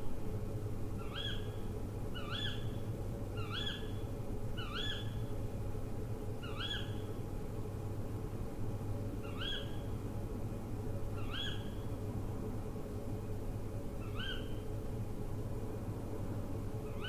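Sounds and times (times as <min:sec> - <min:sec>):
steady low hum: 0:00.0 - 0:06.4
owl calling: 0:01.0 - 0:01.5, 0:02.2 - 0:02.6, 0:03.4 - 0:03.9, 0:04.6 - 0:05.1, 0:06.4 - 0:07.0, 0:14.0 - 0:14.6.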